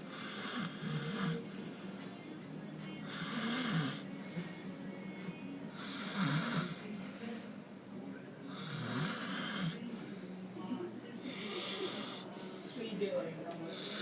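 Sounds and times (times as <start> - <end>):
man snoring heavily: 0.1 - 1.9, 3.0 - 4.1, 5.7 - 6.8, 8.5 - 9.8, 11.3 - 12.2, 13.7 - 14.0.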